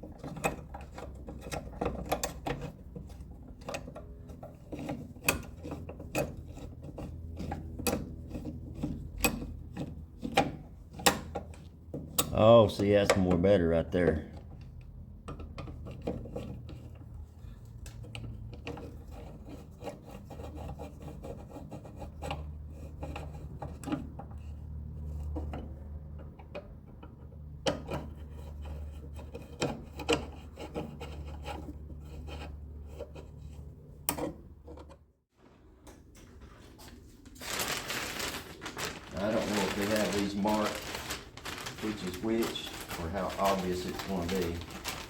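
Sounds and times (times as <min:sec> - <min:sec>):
rustling: 0:36.3 - 0:45.0
rubber weatherstrip rubbing and creaking: 0:37.4 - 0:45.0.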